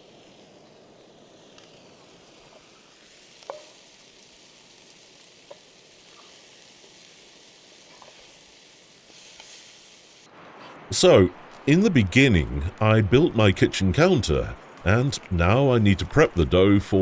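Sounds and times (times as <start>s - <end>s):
vegetables sizzling in oil: 0.0s - 10.3s.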